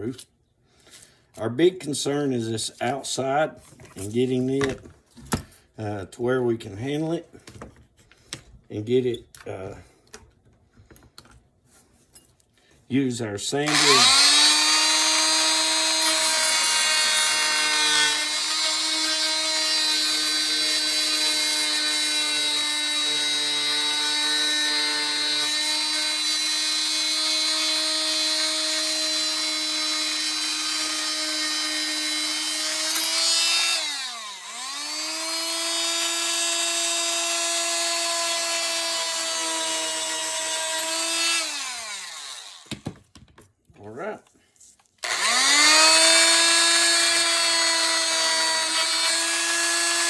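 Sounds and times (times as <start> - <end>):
electric power sander running: 13.7 - 42.7, 45.0 - 50.0.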